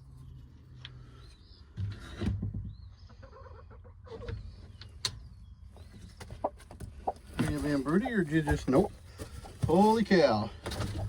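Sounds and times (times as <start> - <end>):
hens clucking: 6.2 - 11.0
rustling: 7.2 - 11.0.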